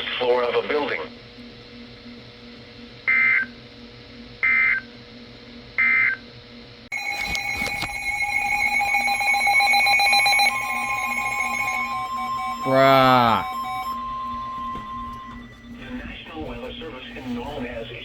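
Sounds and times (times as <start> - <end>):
buzzing alert tone: 6.9 - 15.9
warbling data bursts: 6.9 - 17.0.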